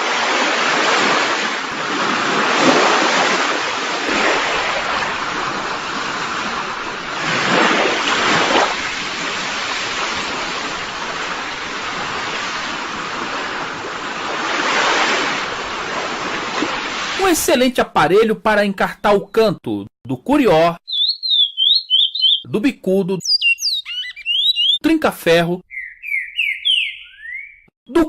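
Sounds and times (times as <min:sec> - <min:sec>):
ocean surf washing in: 0:00.0 - 0:17.4.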